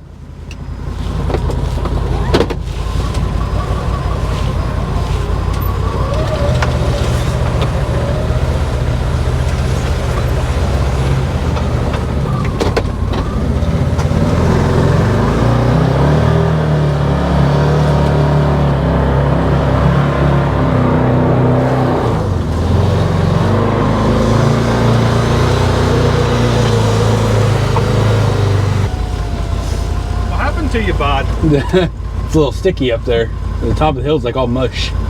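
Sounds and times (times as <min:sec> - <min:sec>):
engine running under load: 0:00.0 - 0:35.0
clunk: 0:00.5 - 0:08.0, 0:09.4 - 0:14.3.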